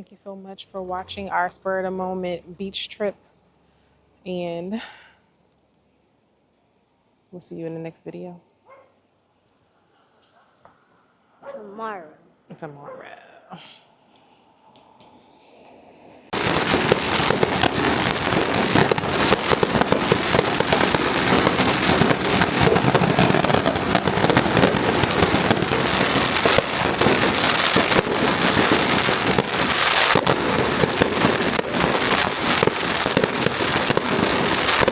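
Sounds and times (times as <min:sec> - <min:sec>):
fireworks crackling and popping: 0:16.3 - 0:34.9.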